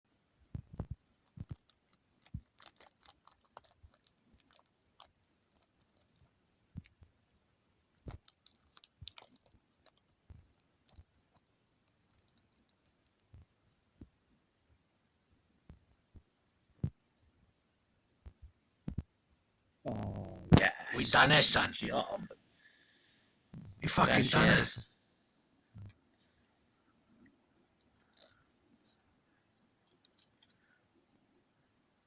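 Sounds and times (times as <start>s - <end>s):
foil wrapper crinkling: 1.2s - 6.2s, 8.0s - 10.2s.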